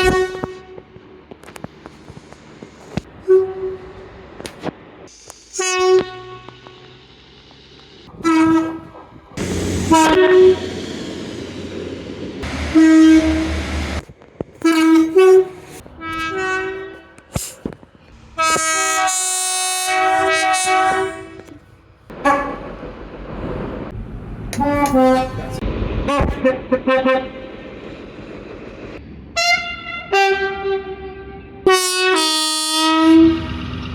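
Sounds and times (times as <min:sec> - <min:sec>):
train horn blasts: 0:00.0 - 0:01.6, 0:02.9 - 0:04.2, 0:05.5 - 0:07.0, 0:08.1 - 0:11.2, 0:12.4 - 0:14.0, 0:14.6 - 0:22.9, 0:24.5 - 0:27.6, 0:29.4 - 0:33.9.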